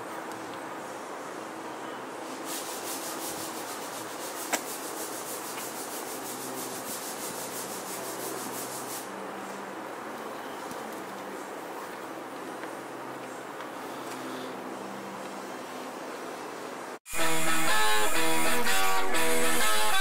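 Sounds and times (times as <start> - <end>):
hand rubbing painted metal: 2.4 - 9.1.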